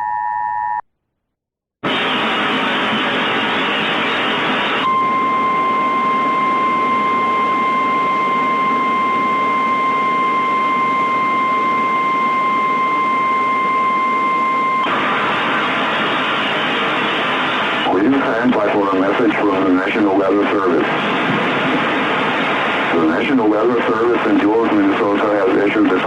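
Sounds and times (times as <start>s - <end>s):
steady high alarm tone: 1.9s - 19.7s
radio hiss: 14.8s - 26.0s.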